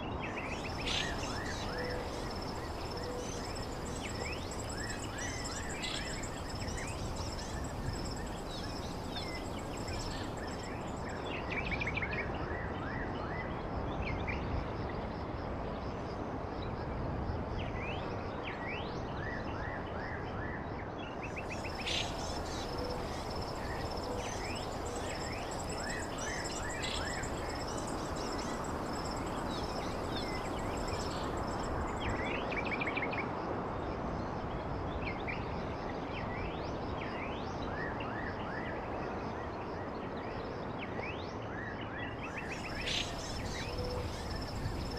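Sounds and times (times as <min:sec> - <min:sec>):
insects trilling: 0:00.3 - 0:11.4, 0:21.3 - 0:32.7, 0:42.3 - 0:44.9
rushing background noise: 0:21.4 - 0:32.6
birds chirping: 0:21.5 - 0:32.1.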